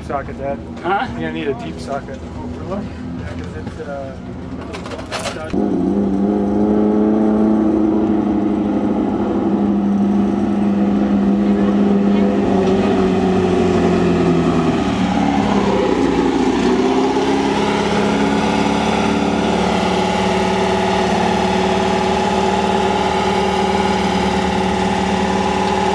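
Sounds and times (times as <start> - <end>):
engine running and idling: 7.6 - 25.9.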